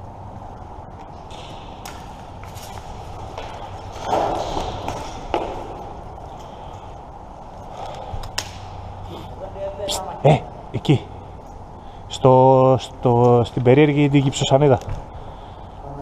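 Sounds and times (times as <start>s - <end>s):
footsteps: 0.9s - 9.3s.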